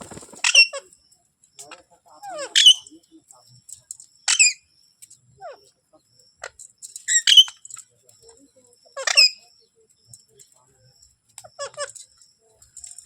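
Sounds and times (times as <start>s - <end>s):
parakeet high-pitched calls: 2.3s - 2.9s, 7.1s - 7.6s.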